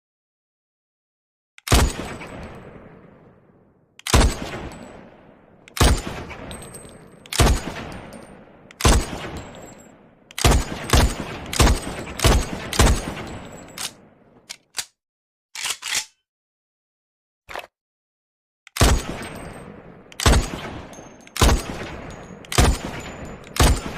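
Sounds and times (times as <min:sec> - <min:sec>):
rifle shots with echo: 0:01.7 - 0:14.4, 0:18.8 - 0:23.9.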